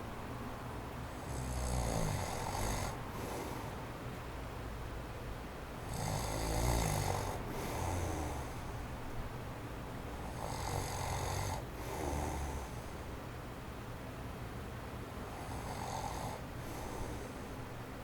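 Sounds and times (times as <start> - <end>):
electric fan running: 0.0 - 18.0
man snoring: 1.2 - 3.4, 5.8 - 8.6, 10.2 - 12.8, 15.3 - 17.2.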